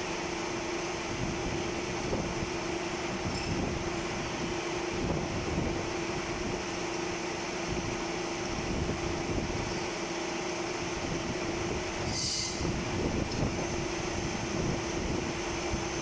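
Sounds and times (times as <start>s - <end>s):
machine shop hum: 0.0s - 16.0s.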